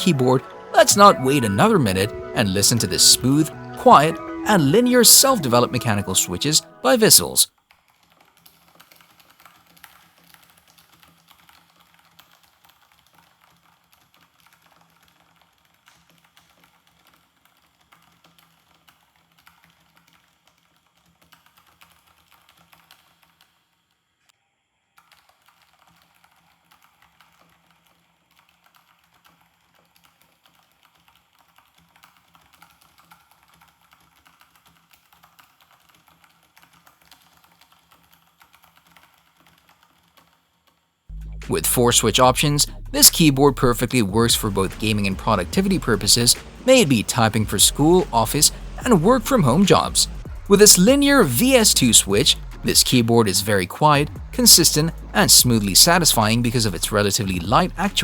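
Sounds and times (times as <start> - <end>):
soft keyboard typing: 0.0 - 7.5, 25.1 - 40.5, 41.5 - 58.0.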